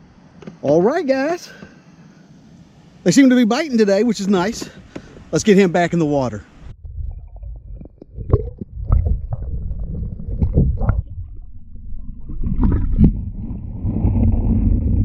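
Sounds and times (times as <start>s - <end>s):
low rumble on microphone: 6.6s - 15.0s
water swishing and splashing: 6.6s - 15.0s.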